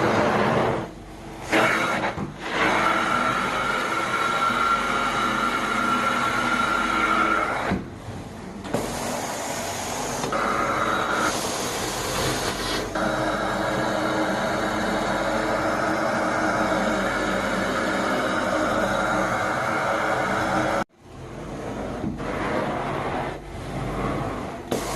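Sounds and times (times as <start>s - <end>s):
carpet cleaner suction whining: 0.0s - 7.8s, 8.7s - 20.8s.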